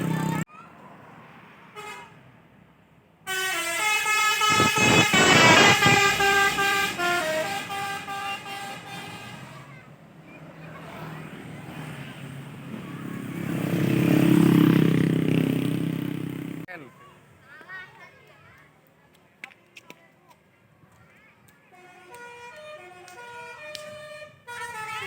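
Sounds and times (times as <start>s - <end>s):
low vehicle engine noise: 0.0s - 1.6s, 3.6s - 17.6s
multi-tone bus horn tune: 1.8s - 2.2s, 3.2s - 9.7s, 21.7s - 25.0s.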